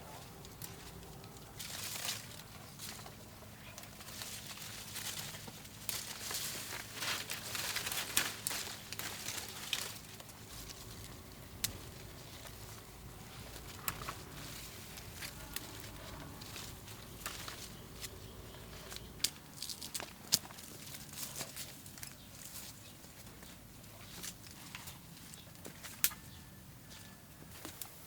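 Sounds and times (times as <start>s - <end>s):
low steady hum: 0.0s - 28.0s.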